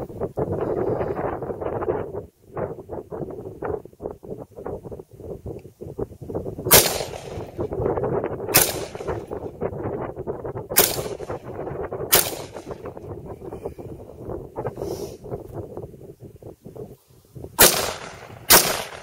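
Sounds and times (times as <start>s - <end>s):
rifle shots: 6.7s - 7.7s, 8.5s - 9.5s, 10.7s - 11.5s, 12.1s - 12.9s, 17.6s - 19.0s.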